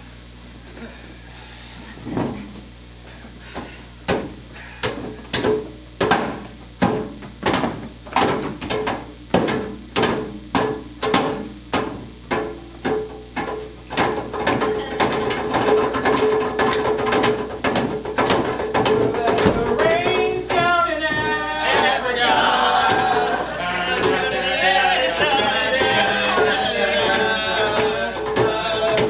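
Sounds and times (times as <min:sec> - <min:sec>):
music with percussive beat: 0:05.3 - 0:22.0, 0:25.2 - 0:29.0.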